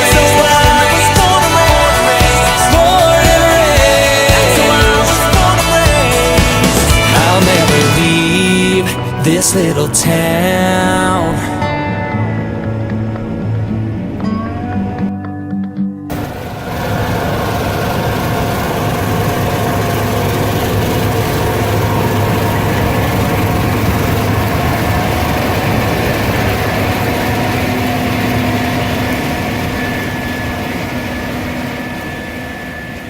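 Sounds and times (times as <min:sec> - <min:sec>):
diesel engine hum: 0:00.0 - 0:15.0, 0:16.1 - 0:33.0
machinery whining tones: 0:16.1 - 0:33.0.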